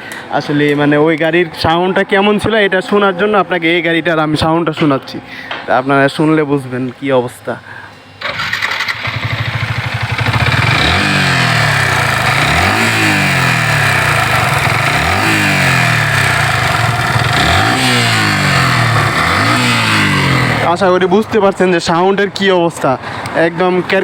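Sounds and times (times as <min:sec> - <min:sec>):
motorcycle engine revving: 0:08.2 - 0:20.8
harsh engine rattling knock: 0:09.2 - 0:20.5.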